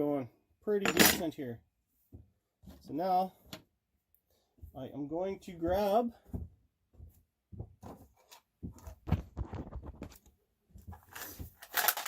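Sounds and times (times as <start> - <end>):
tools knocking and clattering: 0.8 - 1.3
tools rattling: 0.8 - 1.4, 11.0 - 12.0.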